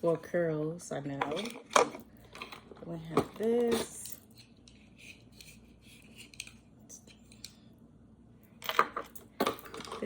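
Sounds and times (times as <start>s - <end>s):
attachments clacking down: 8.6s - 10.0s.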